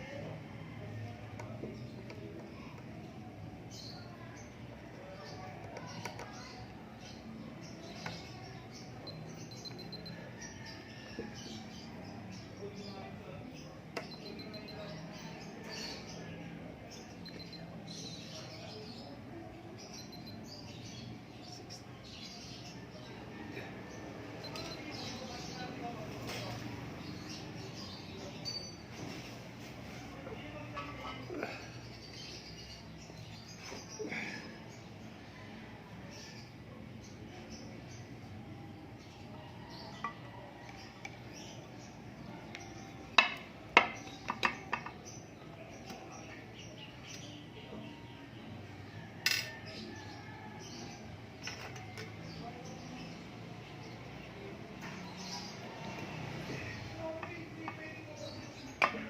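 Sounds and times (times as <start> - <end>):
faint high chirps: 5.7 - 11.3, 14.0 - 16.1, 17.0 - 18.2, 19.9 - 20.7.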